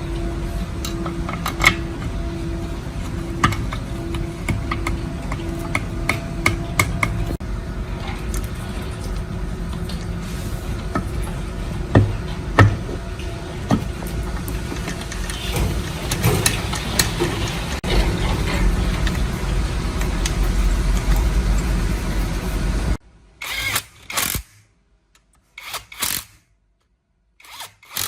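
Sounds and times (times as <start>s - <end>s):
steady low hum: 0.0s - 25.1s
metal tools tapping and clinking: 13.7s - 19.1s.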